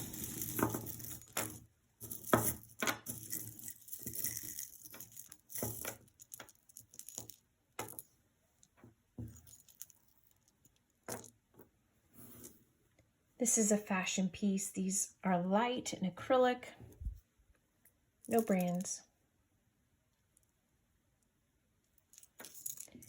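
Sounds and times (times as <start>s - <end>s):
bead necklaces and chains jangling: 0.0s - 8.1s, 22.1s - 23.0s.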